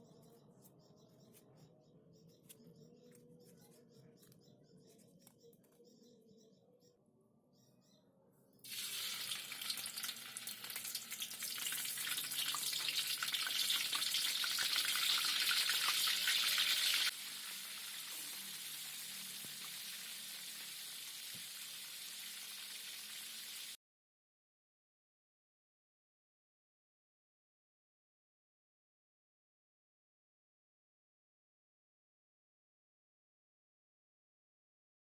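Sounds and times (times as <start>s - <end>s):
food sizzling in frying oil: 8.7s - 23.8s.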